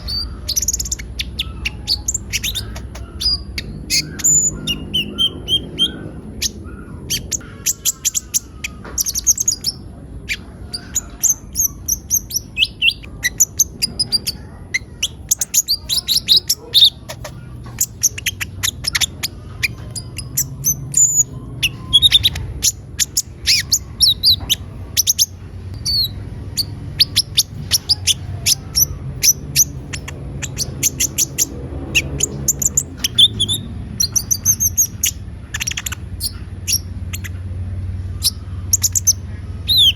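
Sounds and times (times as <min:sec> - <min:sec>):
sunbird singing high chirps and trills: 0:00.0 - 0:39.9.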